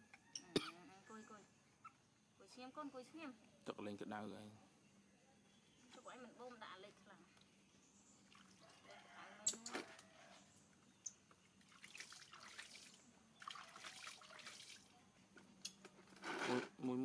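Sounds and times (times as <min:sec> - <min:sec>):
water dripping and trickling: 0:07.3 - 0:08.9, 0:11.0 - 0:15.0.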